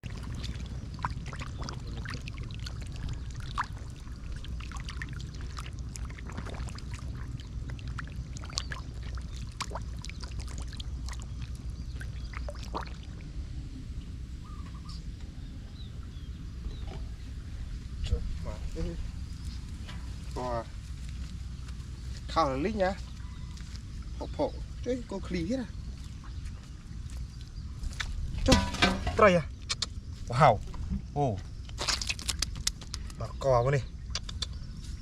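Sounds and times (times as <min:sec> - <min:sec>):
shallow water splashing: 0:00.0 - 0:13.4
low steady rumble: 0:00.0 - 0:35.0.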